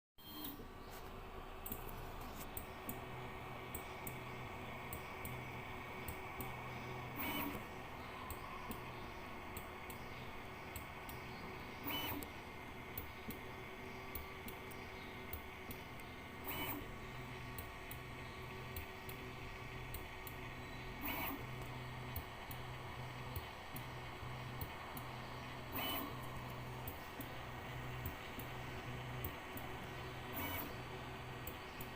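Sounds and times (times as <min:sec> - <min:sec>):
stepper motors humming: 0:00.3 - 0:31.9
short clicks: 0:25.7 - 0:27.4, 0:29.2 - 0:30.8.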